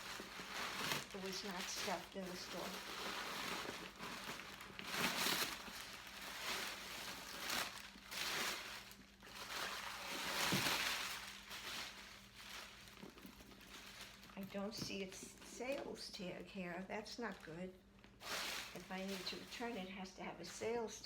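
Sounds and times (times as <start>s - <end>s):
rustling and crinkling stuffing: 0.0s - 21.0s.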